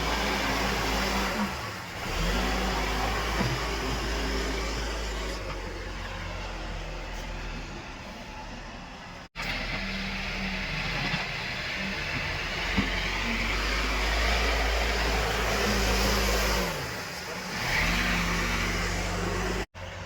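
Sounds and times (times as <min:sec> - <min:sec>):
heavy diesel engine running: 0:00.0 - 0:20.0.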